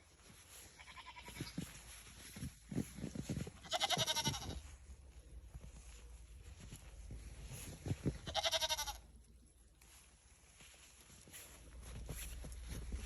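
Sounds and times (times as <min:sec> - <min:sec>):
goat bleating: 0:00.7 - 0:01.6, 0:03.6 - 0:04.7, 0:08.2 - 0:09.1.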